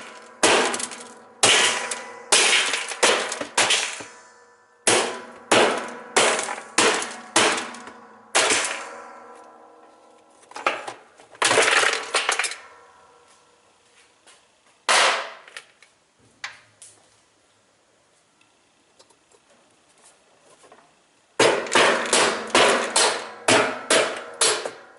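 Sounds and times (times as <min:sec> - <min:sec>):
rattling crash: 0:00.0 - 0:09.7, 0:10.3 - 0:13.2
heavy blows on metal: 0:00.0 - 0:10.0, 0:21.4 - 0:24.9
metallic ringing: 0:00.0 - 0:11.2, 0:11.8 - 0:13.8.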